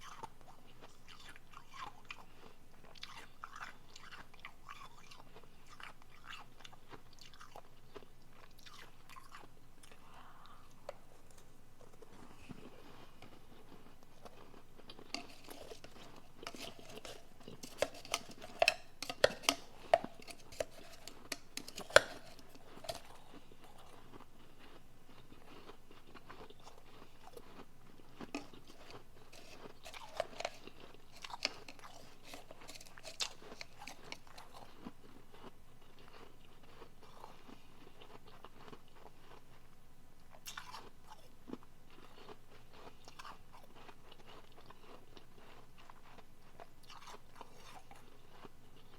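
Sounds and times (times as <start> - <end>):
chewing: 0.0 - 39.7, 40.3 - 48.9
ice crunching: 11.1 - 24.1, 28.2 - 34.7.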